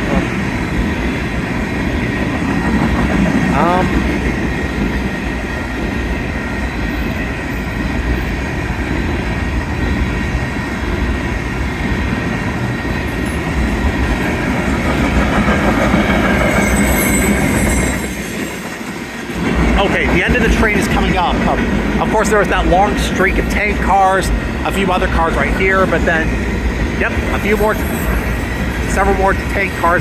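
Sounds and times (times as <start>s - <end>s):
freight train wheels rumbling: 0.0s - 30.0s
faint high wheel squeal: 15.8s - 18.9s, 27.3s - 30.0s.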